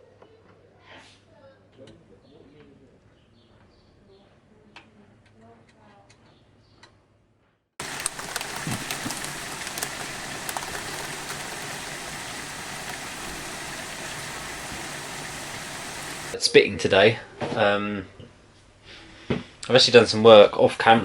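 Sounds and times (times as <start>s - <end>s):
light rain falling: 7.8s - 16.4s.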